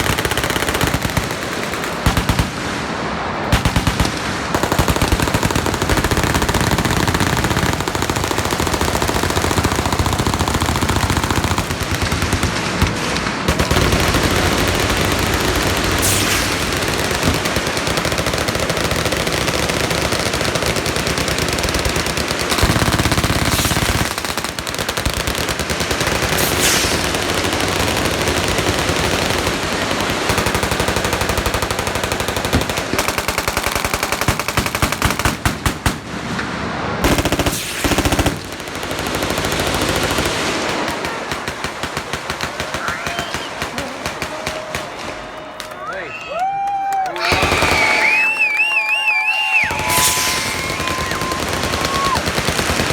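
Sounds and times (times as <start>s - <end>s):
automatic gunfire: 0.0s - 36.2s, 37.0s - 45.7s, 47.2s - 48.4s, 49.7s - 52.9s.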